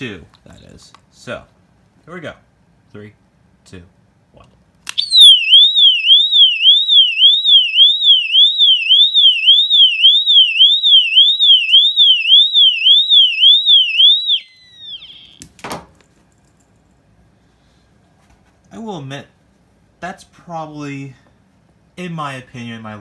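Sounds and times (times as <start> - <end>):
fire alarm siren wail: 5.0 - 15.4.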